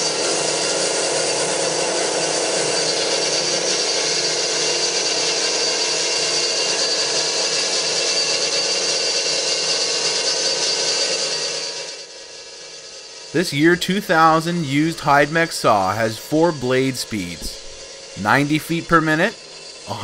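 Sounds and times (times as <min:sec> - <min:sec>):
bandsaw cutting metal: 0:13.4 - 0:20.0.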